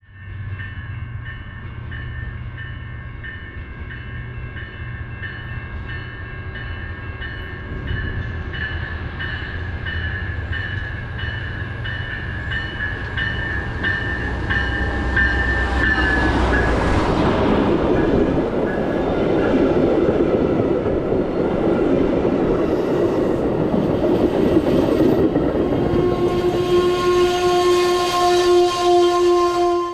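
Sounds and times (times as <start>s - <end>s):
train bell ringing: 0.0s - 17.0s
train wheels and rail noise: 0.0s - 29.9s
locomotive rumbling: 5.8s - 28.3s.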